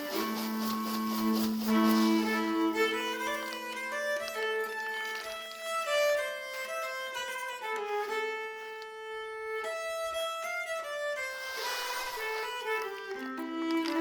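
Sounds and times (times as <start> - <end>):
string accompaniment: 0.0 - 14.0
violin melody: 0.0 - 14.0.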